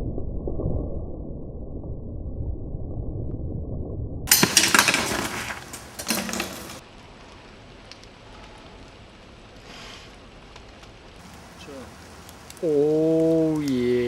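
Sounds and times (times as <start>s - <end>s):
bike clattering and scraping: 4.3s - 6.9s
faint steady hiss: 4.3s - 14.0s
small ticks: 9.6s - 13.8s.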